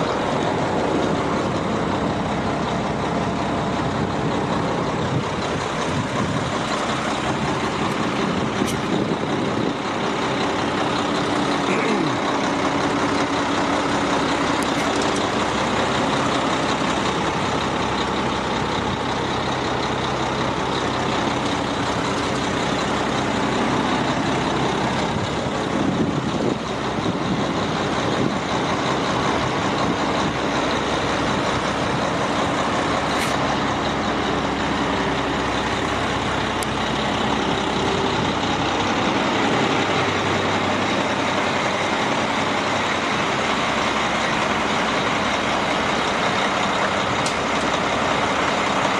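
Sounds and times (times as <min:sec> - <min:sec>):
diesel truck engine droning: 0:00.0 - 0:48.9.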